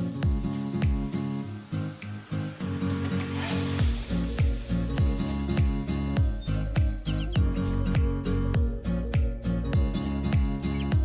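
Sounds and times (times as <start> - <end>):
steady bass line: 0.0 - 1.4, 3.8 - 11.0
hissing sweep: 0.5 - 10.2.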